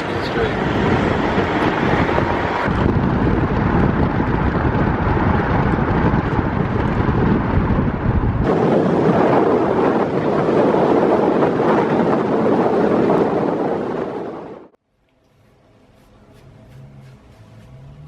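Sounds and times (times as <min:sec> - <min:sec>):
car road and wind noise: 0:00.0 - 0:14.8, 0:16.4 - 0:18.0.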